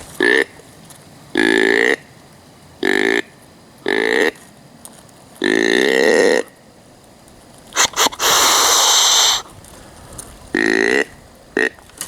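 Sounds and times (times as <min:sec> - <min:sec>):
deer grunt call: 0:07.8 - 0:09.5
snort-wheeze puffs and hiss: 0:07.8 - 0:09.6.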